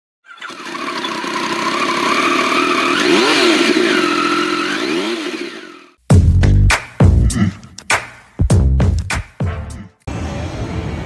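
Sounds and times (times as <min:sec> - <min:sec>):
motorcycle engine revving: 0:00.3 - 0:06.0
loud music with heavy beat: 0:06.1 - 0:09.8.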